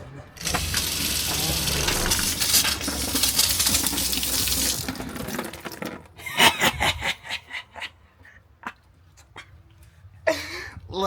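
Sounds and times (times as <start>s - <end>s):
water drips and splashes: 0.4s - 5.4s
water running from faucet into sink: 0.4s - 5.4s.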